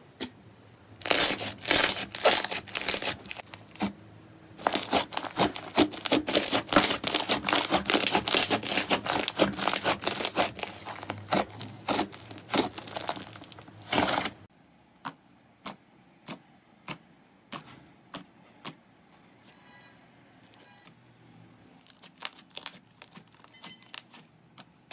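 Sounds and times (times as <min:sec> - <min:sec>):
slime crackling and popping: 0:01.0 - 0:03.9, 0:04.6 - 0:14.4, 0:21.8 - 0:24.9.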